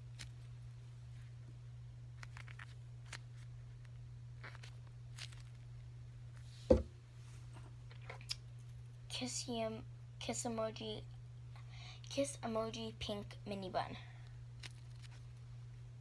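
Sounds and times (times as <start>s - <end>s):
low electrical hum: 0.0s - 16.0s
loud low thump: 6.7s - 6.9s.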